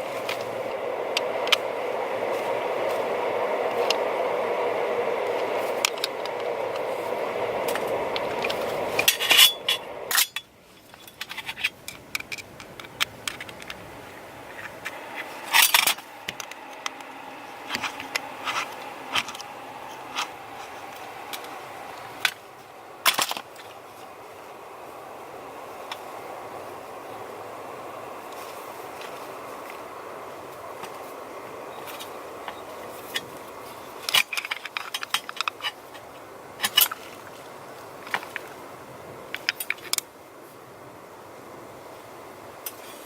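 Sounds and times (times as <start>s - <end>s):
steady mechanical noise: 0.0s - 43.0s
metal tools clinking and scraping: 9.0s - 12.5s.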